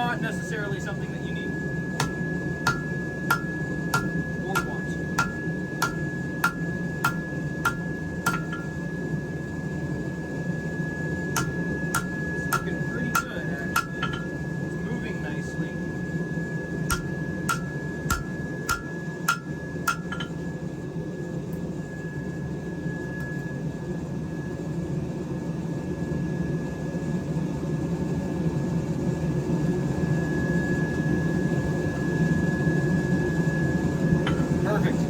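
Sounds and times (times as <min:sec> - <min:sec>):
steady rushing hum: 0:00.0 - 0:20.9, 0:34.0 - 0:35.0
hammer tapping steel on anvil: 0:02.0 - 0:08.9, 0:11.3 - 0:14.4, 0:16.9 - 0:20.5, 0:34.3 - 0:35.0.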